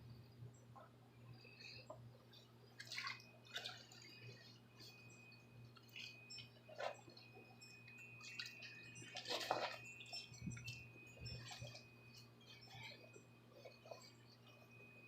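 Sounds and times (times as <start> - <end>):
faint hum: 0.0 - 15.0
water drips and splashes: 2.8 - 4.9, 7.9 - 11.9.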